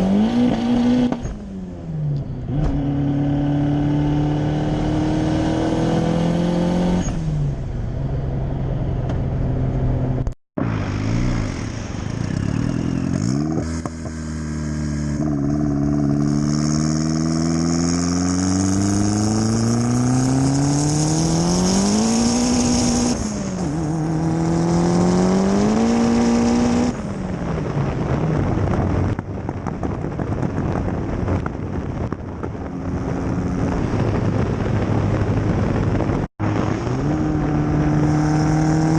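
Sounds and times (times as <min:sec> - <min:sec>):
car engine accelerating: 0:30.6 - 0:38.9.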